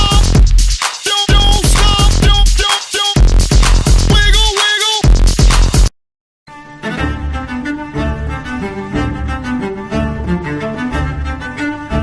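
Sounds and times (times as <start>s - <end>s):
electronic dance ringtone: 0.0s - 5.9s.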